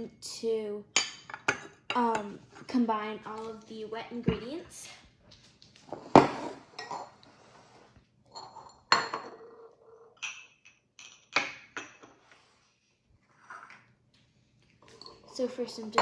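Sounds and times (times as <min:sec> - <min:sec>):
bowls and utensils clinking: 0:01.0 - 0:03.6, 0:06.0 - 0:07.3, 0:08.3 - 0:12.2, 0:14.8 - 0:16.0.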